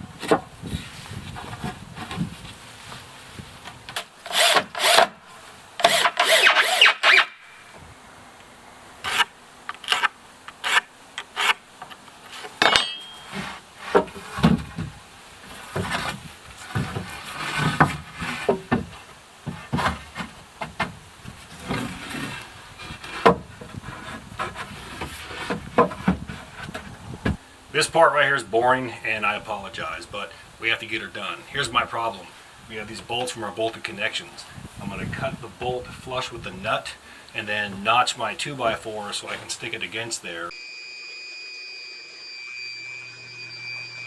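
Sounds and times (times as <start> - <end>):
hand saw cutting wood: 4.2 - 5.1, 5.8 - 7.4, 9.0 - 11.6, 15.6 - 18.6
lumber knocking and scraping: 11.8 - 27.4.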